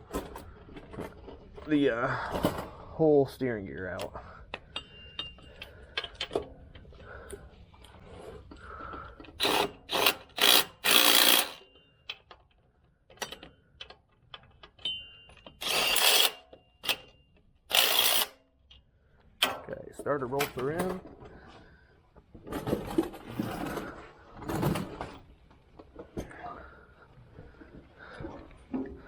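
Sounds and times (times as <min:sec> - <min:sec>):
ratchet clicking: 0:09.4 - 0:12.3, 0:15.4 - 0:17.1, 0:17.7 - 0:18.4.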